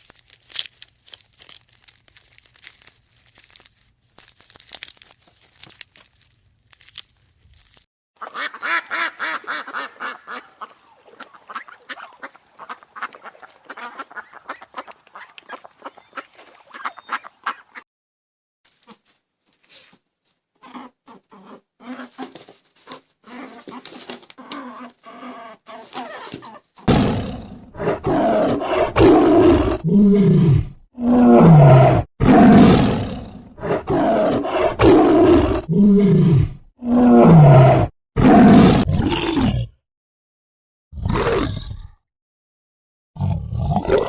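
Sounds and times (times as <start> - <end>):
big cat roaring: 26.9 - 39.8, 41.0 - 42.0, 43.2 - 44.0.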